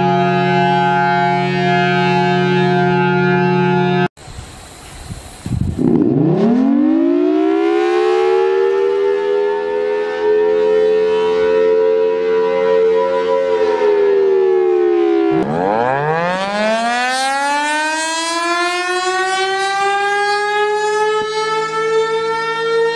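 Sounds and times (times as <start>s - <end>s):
warning siren winding up: 4.8s - 22.9s.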